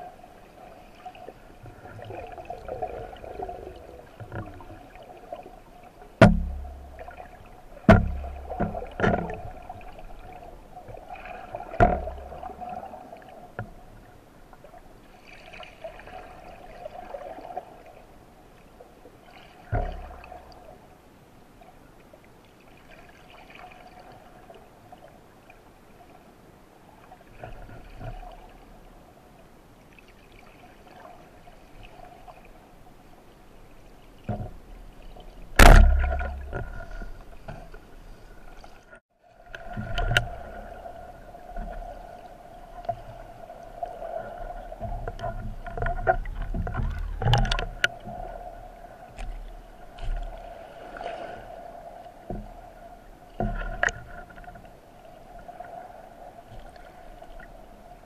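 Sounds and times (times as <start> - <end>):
water rushing underwater: 0.0 - 14.0, 34.2 - 58.0
sharp loud knock: 35.6 - 36.1.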